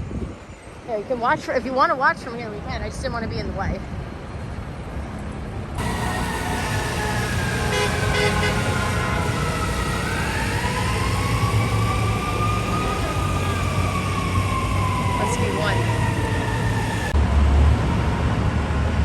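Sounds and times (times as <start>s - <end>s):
low engine rumble: 5.8s - 17.2s
siren wailing: 5.8s - 17.2s.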